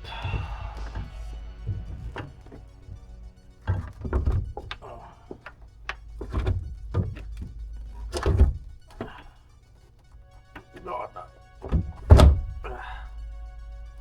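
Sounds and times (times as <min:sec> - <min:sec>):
hard knocks and thunks: 0:00.0 - 0:09.3, 0:11.6 - 0:13.1
background music: 0:00.0 - 0:14.0.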